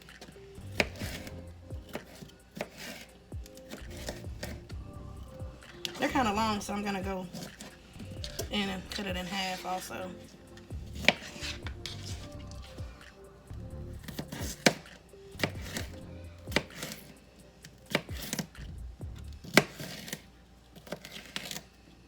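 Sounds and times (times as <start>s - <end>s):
soft background music: 0.0s - 22.0s
knife chopping on cutting board: 0.7s - 4.7s, 10.8s - 12.4s, 14.0s - 17.1s, 17.9s - 18.5s, 19.1s - 20.2s.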